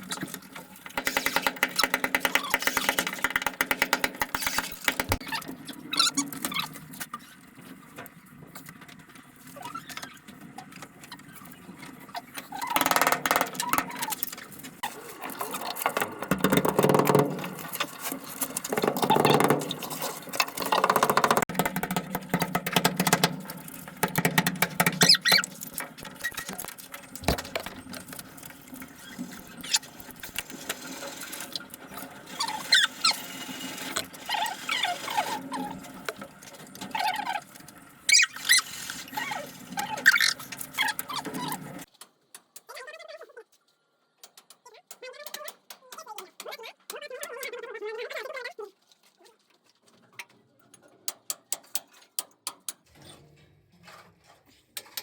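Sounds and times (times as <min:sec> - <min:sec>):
pipe fitting clattering and clicks: 0:00.0 - 0:05.3, 0:12.4 - 0:34.3
high squeaky chirps: 0:24.9 - 0:26.7, 0:29.0 - 0:30.0, 0:32.3 - 0:33.6, 0:38.1 - 0:41.8.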